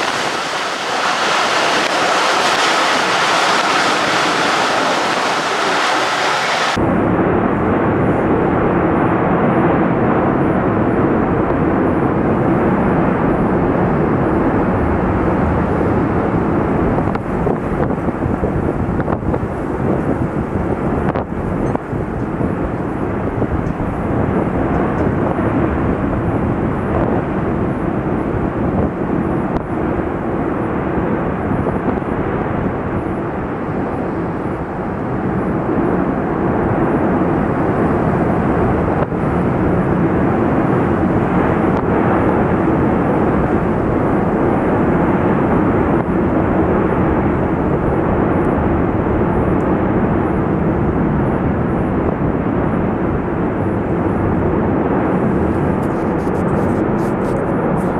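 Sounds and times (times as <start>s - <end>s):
volcano vents fountaining lava: 0.0s - 6.8s, 14.9s - 57.9s.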